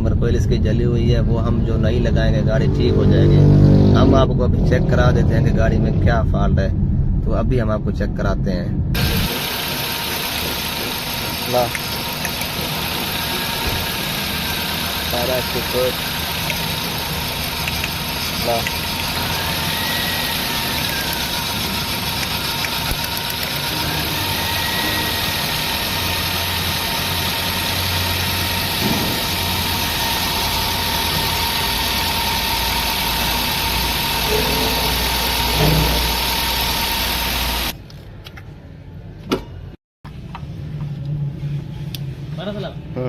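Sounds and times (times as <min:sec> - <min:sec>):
car engine idling with misfire: 0:09.0 - 0:37.8.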